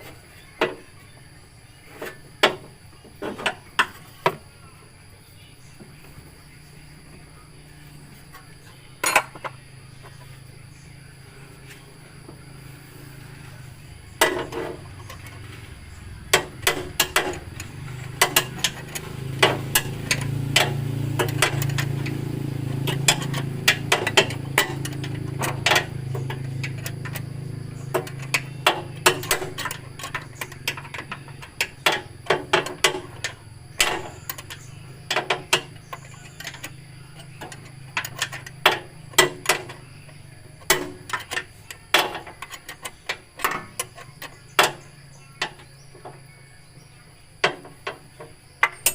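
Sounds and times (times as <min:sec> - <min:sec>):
hand tools clinking on metal: 0:16.2 - 0:46.2.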